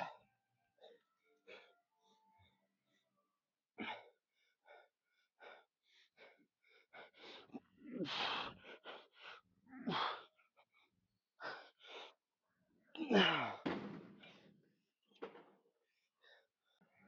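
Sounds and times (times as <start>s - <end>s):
man breathing hard: 0.8s - 2.5s, 3.8s - 12.2s.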